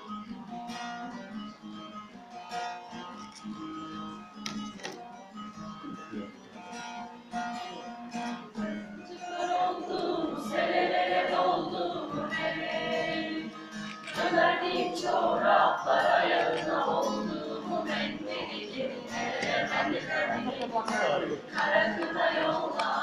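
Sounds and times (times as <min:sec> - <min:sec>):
acoustic guitar playing: 0:00.0 - 0:23.0
group of voices singing: 0:09.1 - 0:23.0.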